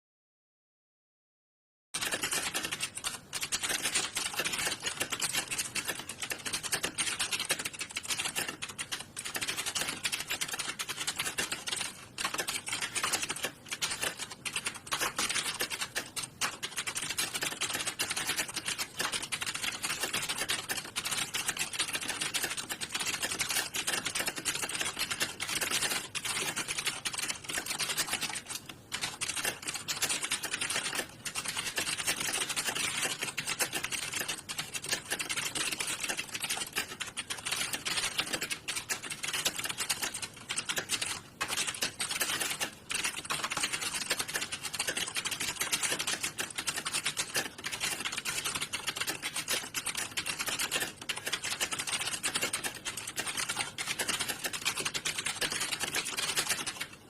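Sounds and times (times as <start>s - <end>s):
fast keyboard typing: 2.0s - 57.0s.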